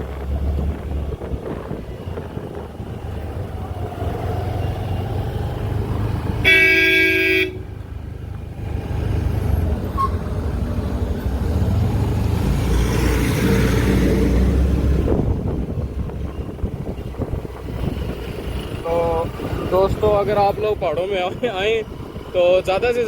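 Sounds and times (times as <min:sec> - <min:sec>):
traffic and wind rumble: 0:00.0 - 0:23.0
vehicle horn blast: 0:06.4 - 0:07.7.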